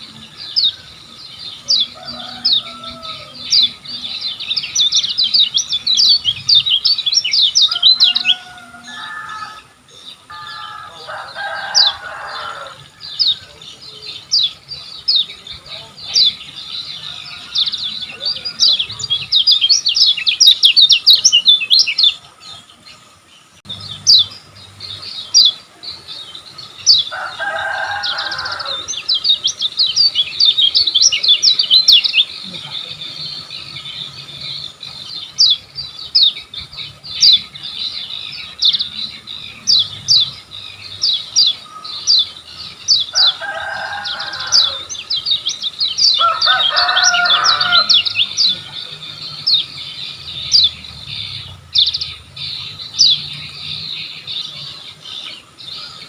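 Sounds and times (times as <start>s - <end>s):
bird singing high chirps: 0.0s - 56.0s.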